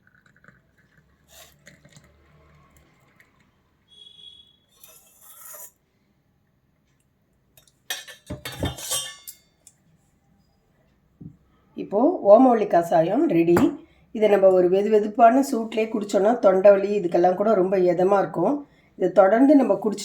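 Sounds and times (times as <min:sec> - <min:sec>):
metal vessels clinking and knocking: 0:07.6 - 0:09.7.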